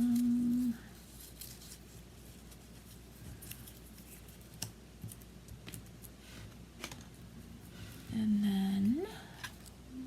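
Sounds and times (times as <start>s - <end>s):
paper rustling: 0.6s - 5.2s.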